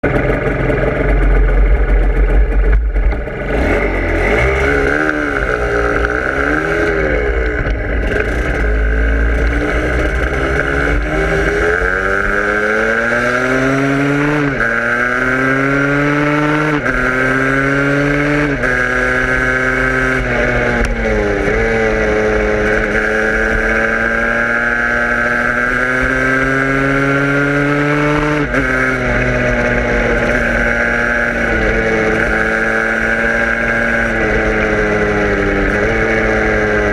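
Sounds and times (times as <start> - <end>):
vehicle engine accelerating: 0.0 - 36.9.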